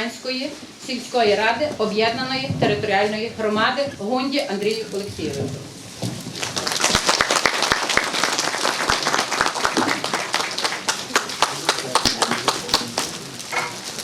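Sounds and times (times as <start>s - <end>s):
audience applauding: 6.2s - 14.0s.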